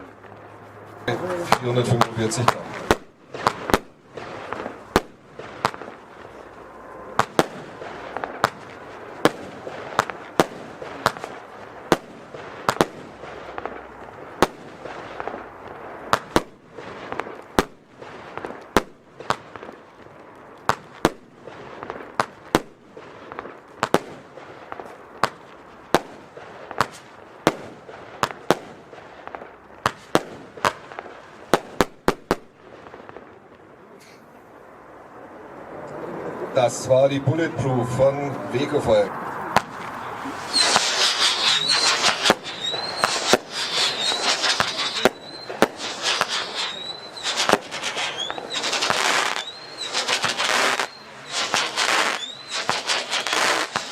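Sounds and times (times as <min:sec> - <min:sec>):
firework bangs: 0:00.0 - 0:34.0, 0:36.6 - 0:53.9
firework hiss: 0:01.1 - 0:19.9, 0:38.6 - 0:53.9.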